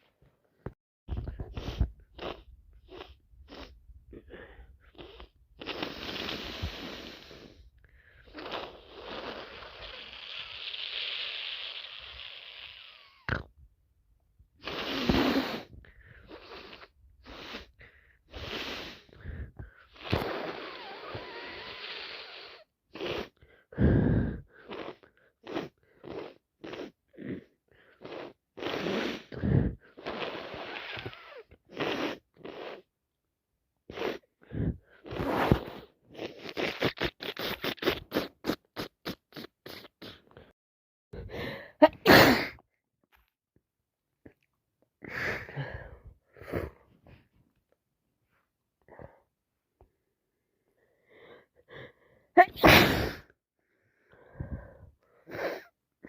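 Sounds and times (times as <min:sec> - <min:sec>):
forced nose breathing: 0:01.1 - 0:13.2, 0:14.6 - 0:32.9, 0:33.9 - 0:40.5, 0:45.0 - 0:47.4, 0:50.8 - 0:55.8
person sniffling and snorting: 0:01.1 - 0:13.4, 0:14.6 - 0:32.9, 0:33.9 - 0:40.5, 0:41.2 - 0:42.6, 0:45.0 - 0:47.4, 0:50.8 - 0:53.4, 0:54.1 - 0:55.8.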